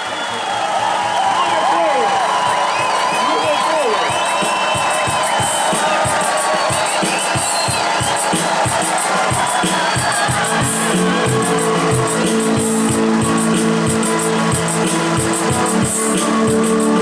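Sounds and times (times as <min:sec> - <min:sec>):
steady drum beat: 0:02.8 - 0:17.0
sustained guitar chords: 0:10.3 - 0:17.0.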